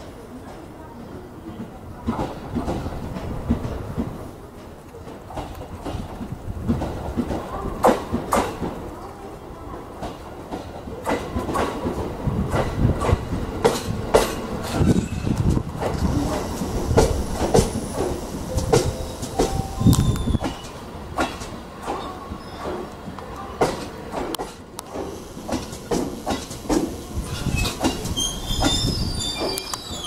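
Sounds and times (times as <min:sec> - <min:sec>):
train wheels clacking on rail joints: 0:01.4 - 0:08.8, 0:09.9 - 0:30.0
wheel squeals: 0:27.3 - 0:30.0.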